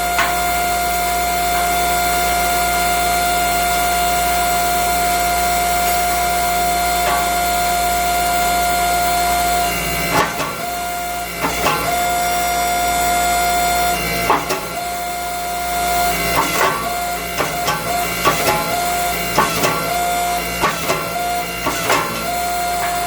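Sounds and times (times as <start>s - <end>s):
machine hum with whine: 0.0s - 23.0s
sharp metal knocks and clanks: 0.1s - 0.6s, 7.0s - 7.4s, 10.1s - 10.8s, 11.4s - 12.2s, 14.2s - 14.8s, 16.4s - 23.0s.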